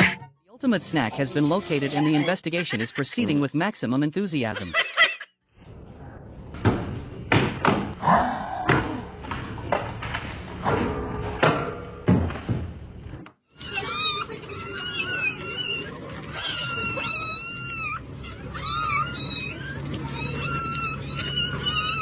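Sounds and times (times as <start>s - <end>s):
kittens mewing: 1.1s - 3.3s, 13.5s - 22.0s.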